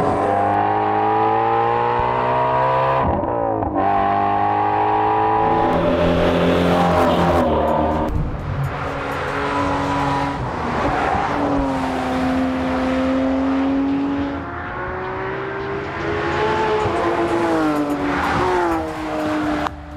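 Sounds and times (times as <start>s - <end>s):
car engine at high revs: 0.0s - 19.9s.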